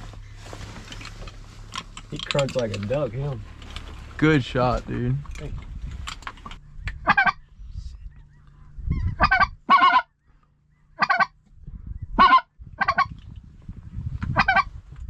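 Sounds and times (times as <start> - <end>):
low rumble: 0.0 - 15.0
geese honking: 7.0 - 7.4, 9.2 - 10.2, 10.9 - 11.4, 12.2 - 13.1, 14.4 - 14.7.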